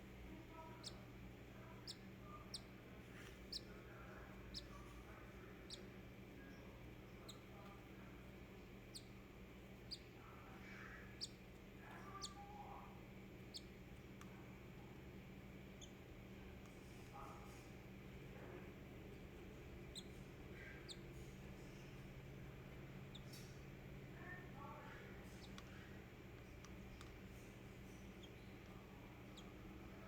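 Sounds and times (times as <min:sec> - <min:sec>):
chick peeping: 0:19.9 - 0:21.1.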